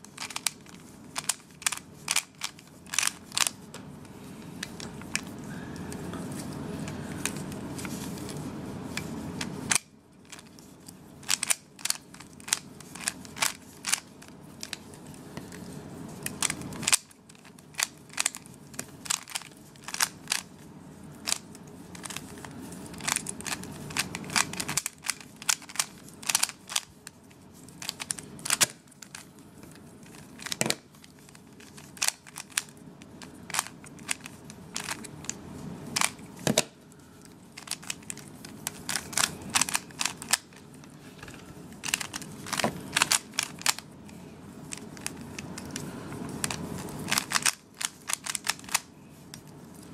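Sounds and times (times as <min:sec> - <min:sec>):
low background hum: 0:00.0 - 0:49.9
puzzle cube clicking: 0:00.1 - 0:03.6, 0:11.2 - 0:14.8, 0:16.2 - 0:20.5, 0:22.9 - 0:26.9, 0:31.6 - 0:35.4, 0:36.0 - 0:36.7, 0:37.6 - 0:40.6, 0:41.8 - 0:43.8, 0:46.4 - 0:48.9.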